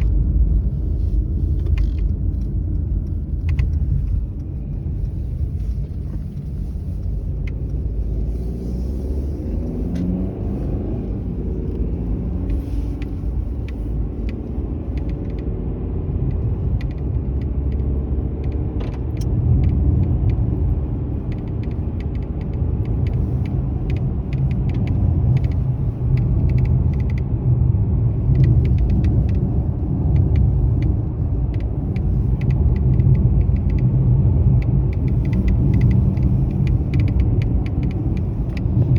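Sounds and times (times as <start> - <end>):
low rumble of moving car: 0.0 - 38.9.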